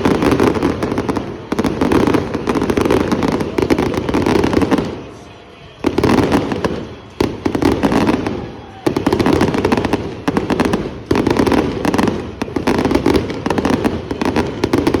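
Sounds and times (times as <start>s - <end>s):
fireworks crackling pops: 0.0s - 15.0s.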